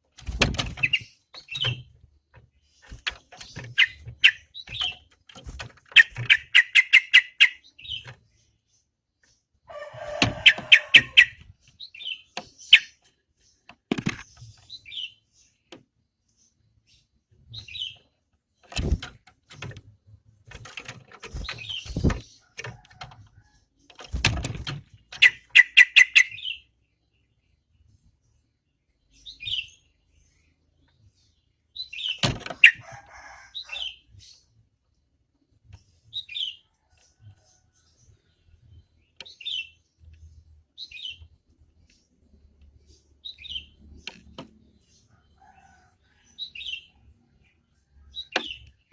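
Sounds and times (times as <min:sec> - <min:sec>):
bird chattering notes: 0:05.9 - 0:08.0, 0:25.2 - 0:26.5.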